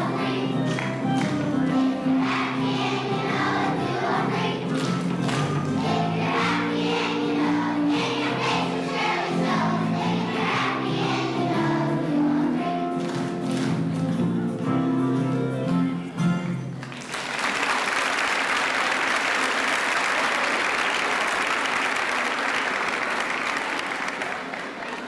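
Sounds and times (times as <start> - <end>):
children's choir singing: 0.0 - 14.4
instrumental accompaniment: 0.0 - 16.8
audience applause: 16.7 - 25.0.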